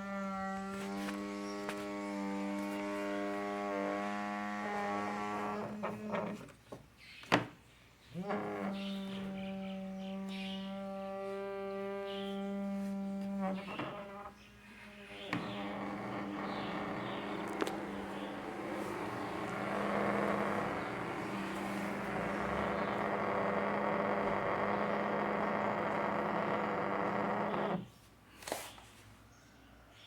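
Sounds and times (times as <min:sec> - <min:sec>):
phone vibration motor buzzing: 0:00.0 - 0:06.4, 0:15.0 - 0:27.9.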